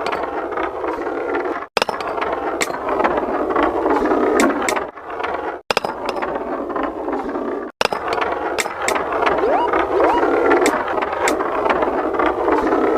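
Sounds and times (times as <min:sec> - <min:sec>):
short rising tones: 0:09.4 - 0:10.6.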